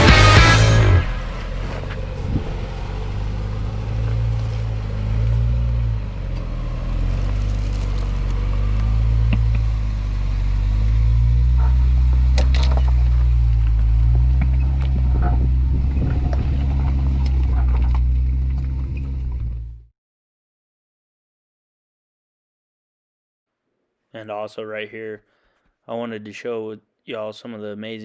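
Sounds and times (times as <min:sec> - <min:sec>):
car engine low drone: 0:00.0 - 0:19.9.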